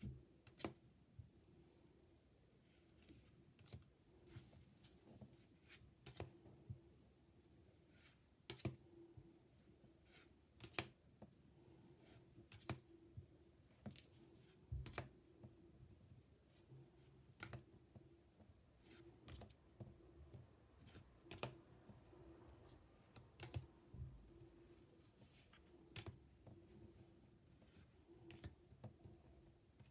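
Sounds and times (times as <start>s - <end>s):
faint clicks and taps: 12.5s - 16.2s, 17.3s - 24.5s, 25.1s - 27.0s.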